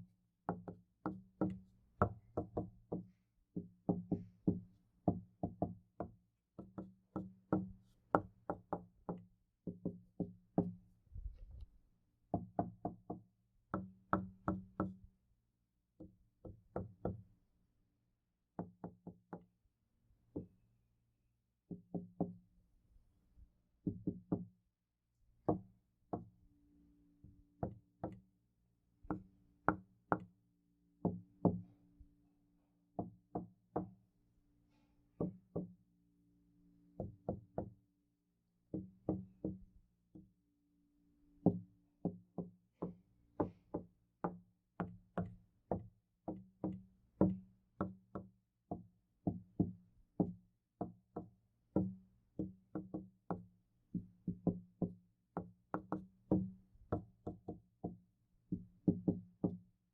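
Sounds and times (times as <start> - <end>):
knuckles knocking on wooden door: 0.5 - 10.7, 21.7 - 22.4, 23.8 - 24.5, 38.7 - 39.6, 46.3 - 59.6.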